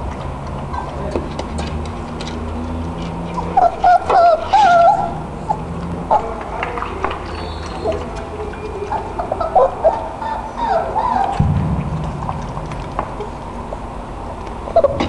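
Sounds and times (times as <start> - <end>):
puppy whimpering and whining: 3.3 - 6.2, 7.2 - 11.4.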